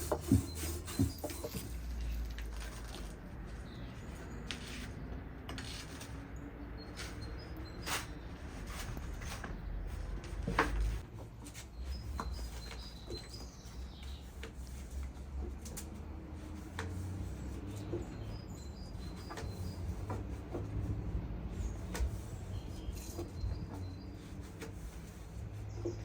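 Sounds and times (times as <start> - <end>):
birds chirping faintly: 11.4 - 15.3.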